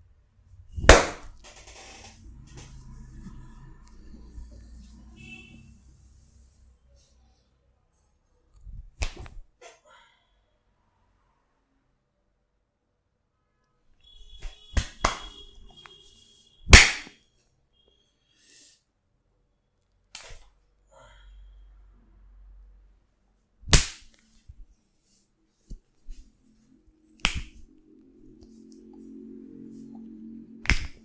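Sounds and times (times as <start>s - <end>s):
massage smacks and cracks: 0.8s - 1.8s, 8.7s - 9.5s, 14.4s - 15.4s, 16.7s - 17.1s, 23.6s - 24.6s, 27.2s - 27.8s, 30.6s - 31.0s.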